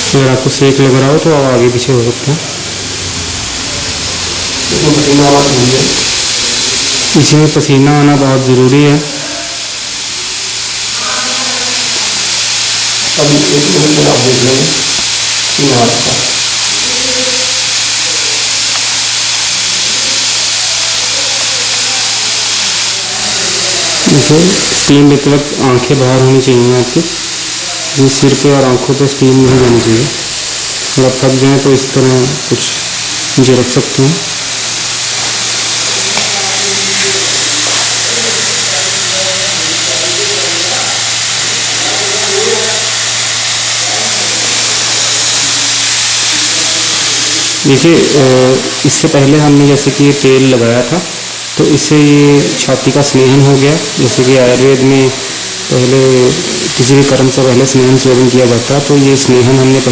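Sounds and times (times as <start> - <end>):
steam hissing from pressure cooker: 0.0 - 59.9.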